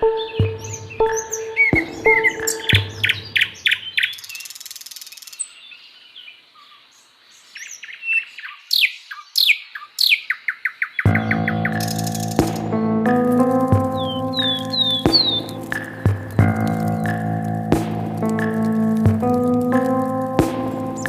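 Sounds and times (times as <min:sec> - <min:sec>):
background music: 0:00.0 - 0:03.7, 0:11.1 - 0:21.0
birds calling: 0:00.0 - 0:12.7, 0:13.3 - 0:21.0.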